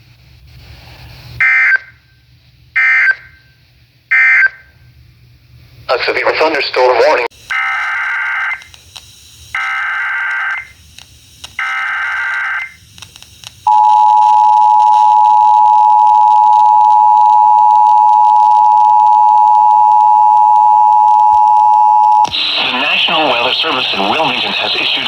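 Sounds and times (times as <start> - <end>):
steady attention tone: 13.7 - 22.3.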